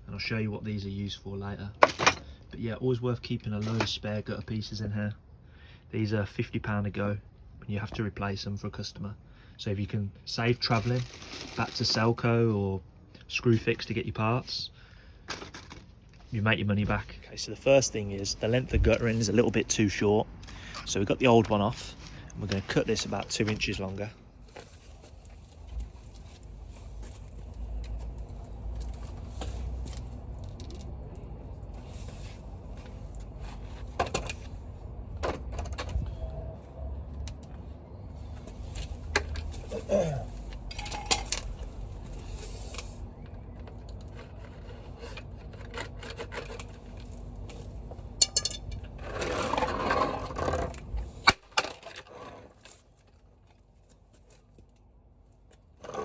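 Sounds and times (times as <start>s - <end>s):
tools and plastic guttering handled: 1.8s - 2.3s, 15.3s - 17.0s
steady low rumble: 16.3s - 24.5s.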